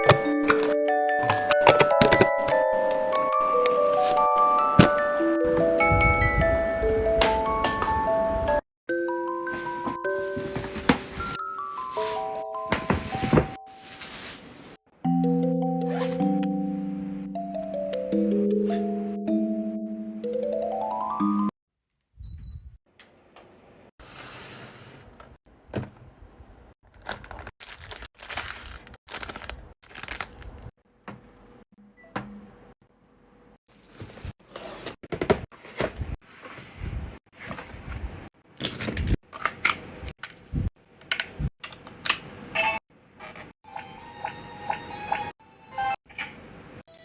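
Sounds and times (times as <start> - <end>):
packaging rustling: 13.2 - 14.8, 26.9 - 30.7.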